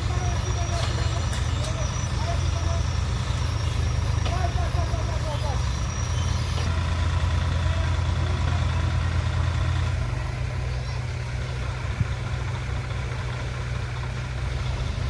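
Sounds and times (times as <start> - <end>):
engine humming: 0.0 - 15.0.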